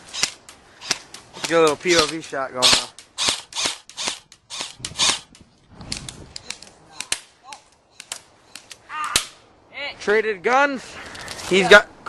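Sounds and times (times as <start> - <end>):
airsoft rifles firing: 0.0 - 7.4.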